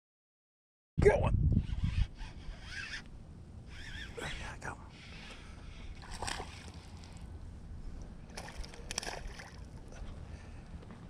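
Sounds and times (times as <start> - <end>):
water sloshing around boat: 3.6 - 10.6
steady low rumble: 4.4 - 11.0.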